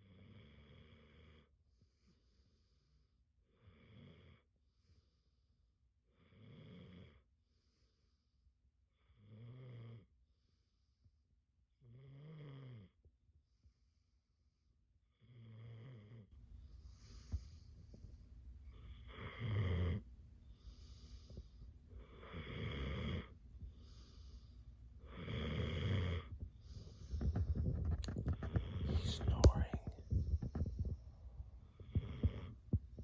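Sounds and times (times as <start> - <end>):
dog snoring: 0.0 - 2.1, 3.4 - 4.5, 6.1 - 7.8, 8.9 - 10.2, 11.8 - 13.0, 15.1 - 18.0, 18.6 - 29.6, 31.6 - 33.0.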